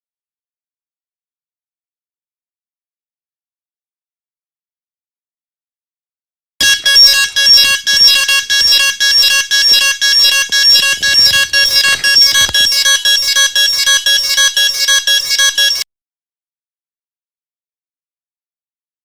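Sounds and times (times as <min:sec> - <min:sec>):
rapid electronic drone beeps: 0:06.6 - 0:15.8.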